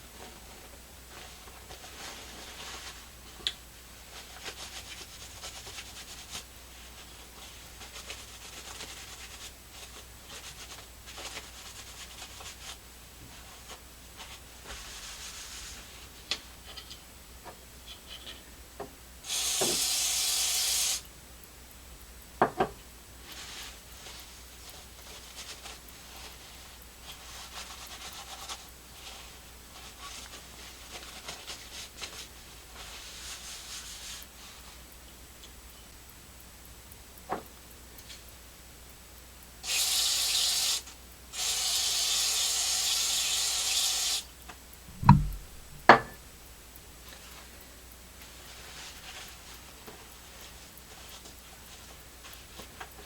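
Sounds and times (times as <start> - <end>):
aerosol spray hiss: 19.2 - 21.1, 39.6 - 44.3.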